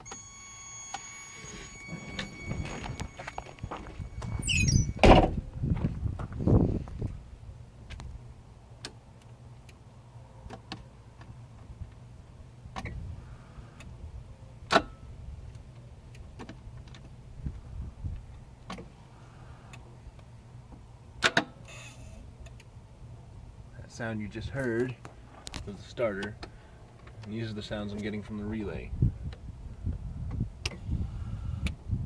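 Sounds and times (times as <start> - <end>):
faint low hum: 0.0 - 7.4.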